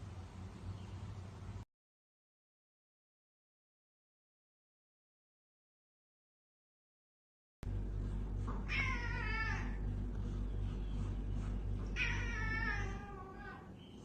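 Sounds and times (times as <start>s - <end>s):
steady low hum: 7.6s - 14.0s
cat meowing: 8.7s - 9.8s, 11.9s - 13.7s.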